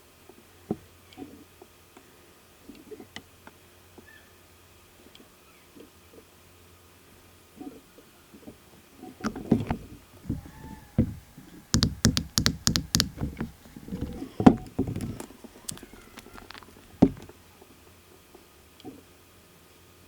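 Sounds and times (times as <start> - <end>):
light taps and knocks on table: 9.2 - 17.3
sharp clicks of bottles: 10.3 - 17.3.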